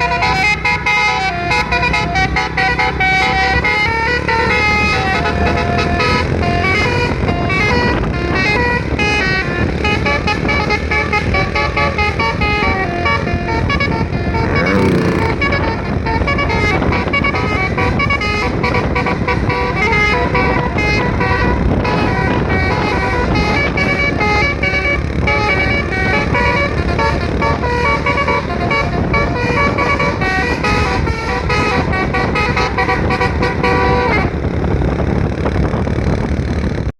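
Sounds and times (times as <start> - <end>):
vehicle horns playing melody: 0.0 - 34.5
low rumble: 12.0 - 17.7.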